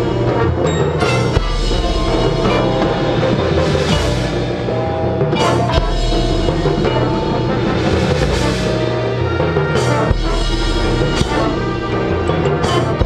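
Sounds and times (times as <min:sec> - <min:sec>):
cymbal crashes: 0:00.0 - 0:12.4
brass chords: 0:00.0 - 0:13.0
drums: 0:00.0 - 0:13.0
low bass line: 0:00.0 - 0:13.0.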